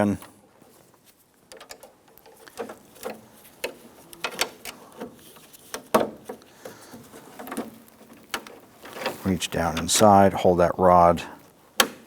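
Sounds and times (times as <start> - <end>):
door handle linkage rattling: 1.5 - 6.5.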